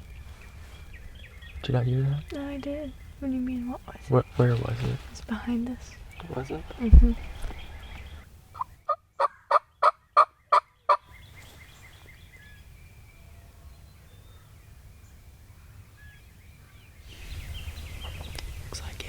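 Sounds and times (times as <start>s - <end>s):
turkey yelping: 8.6s - 11.0s.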